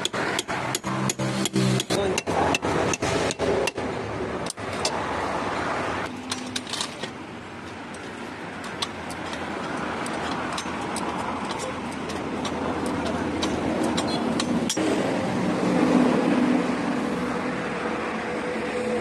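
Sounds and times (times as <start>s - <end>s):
car noise: 0.0s - 19.0s.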